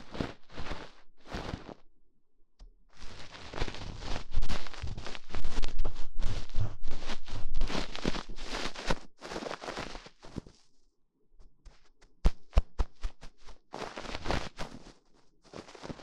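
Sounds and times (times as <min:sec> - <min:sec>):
hands rubbing over microphone: 0:00.0 - 0:01.8, 0:03.0 - 0:10.7, 0:11.6 - 0:16.0
sharp taps on microphone: 0:12.2 - 0:13.2.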